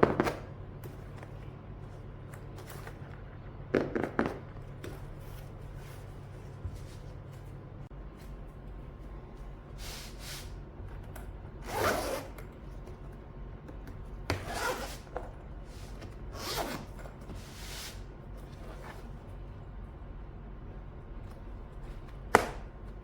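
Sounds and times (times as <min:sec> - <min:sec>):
zipper being pulled: 0:11.6 - 0:12.4, 0:14.3 - 0:15.1, 0:16.3 - 0:17.0.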